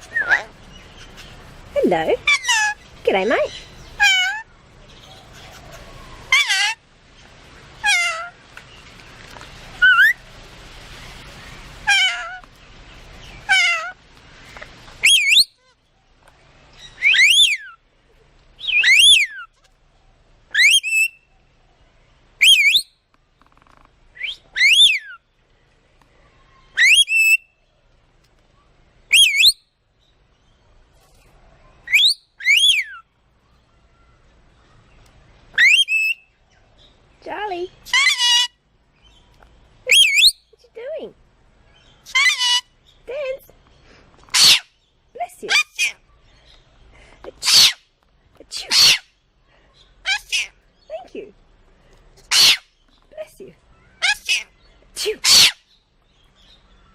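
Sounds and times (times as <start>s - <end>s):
bird whistled calls: 15.0s - 15.6s, 16.9s - 17.8s, 18.6s - 19.5s, 20.5s - 21.3s, 22.4s - 23.0s, 24.2s - 25.2s, 26.7s - 27.5s, 29.1s - 29.7s, 31.9s - 33.0s, 35.6s - 36.3s, 39.9s - 40.5s.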